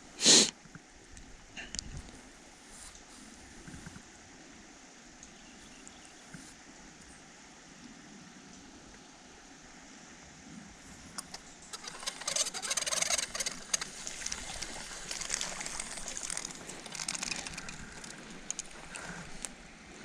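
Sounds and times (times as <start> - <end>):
crackling rustle: 10.7 - 20.0
creek water running: 10.7 - 20.0.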